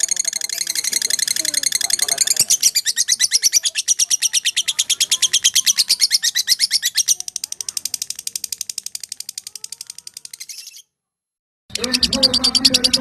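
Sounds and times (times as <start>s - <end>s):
lovebird rapid high chirps: 0.0s - 10.9s, 11.7s - 13.0s.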